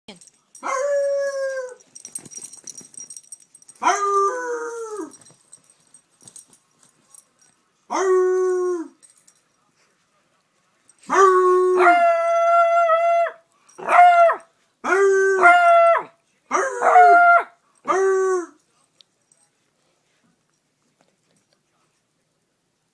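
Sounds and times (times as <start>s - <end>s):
dog howling: 11.1s - 18.6s.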